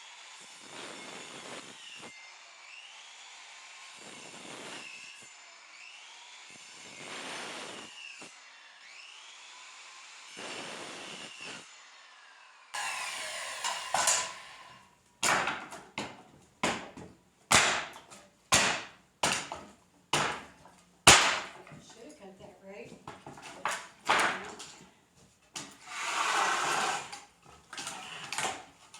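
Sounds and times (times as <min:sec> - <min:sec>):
nails squealing out of wood: 0:12.8 - 0:15.8, 0:25.6 - 0:28.9
hammer blows on wood: 0:12.8 - 0:21.7.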